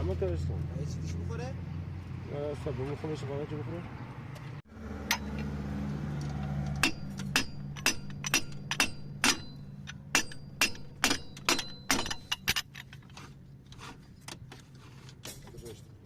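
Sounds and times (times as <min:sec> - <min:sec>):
metal-on-metal clinks: 0:06.8 - 0:13.0.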